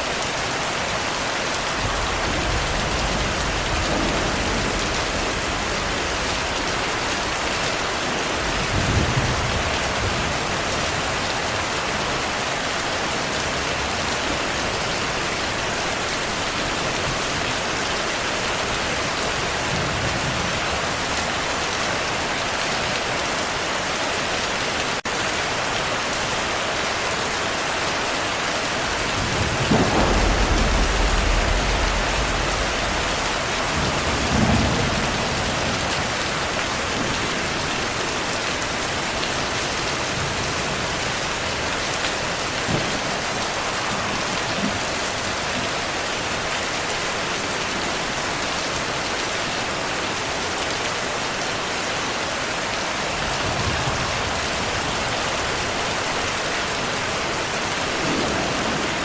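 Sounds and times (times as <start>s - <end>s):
heavy rain: 0.0s - 59.0s
rolling thunder: 1.7s - 11.2s, 28.8s - 38.0s, 57.8s - 59.0s.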